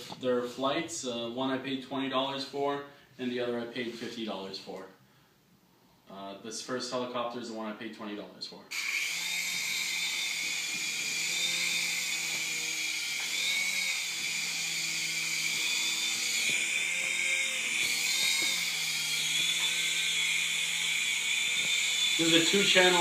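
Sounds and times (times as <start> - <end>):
toy helicopter motor whine: 8.7 - 23.0.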